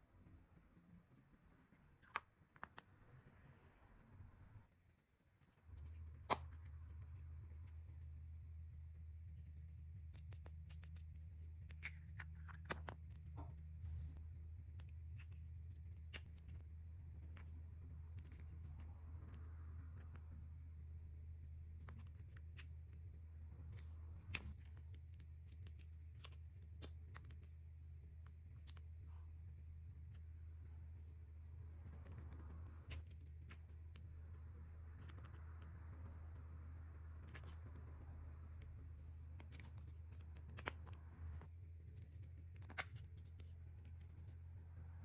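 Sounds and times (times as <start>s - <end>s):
low steady hum: 0.0s - 45.0s
small clicks and crackles: 9.4s - 20.4s, 21.4s - 29.1s, 31.8s - 45.0s.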